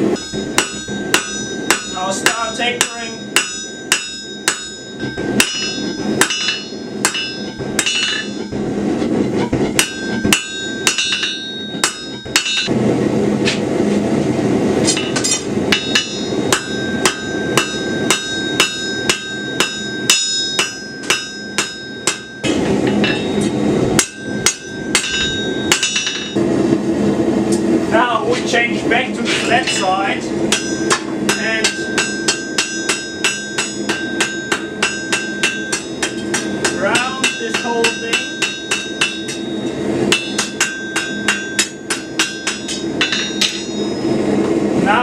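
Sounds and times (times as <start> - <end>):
hammer striking steel on anvil: 0.0 - 12.7, 14.9 - 26.4, 30.5 - 44.6
low rushing noise: 4.8 - 20.0, 21.9 - 31.3.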